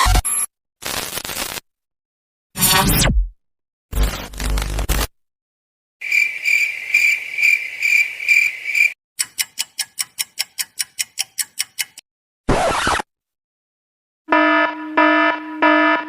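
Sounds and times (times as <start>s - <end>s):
cricket-like chirping trill: 6.0s - 9.0s.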